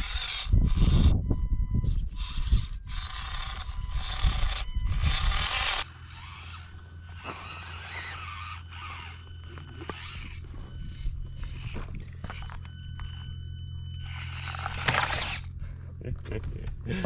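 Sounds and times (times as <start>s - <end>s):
low hum: 0.0s - 17.0s
tyres scraping on stone: 1.9s - 12.6s, 14.0s - 15.6s.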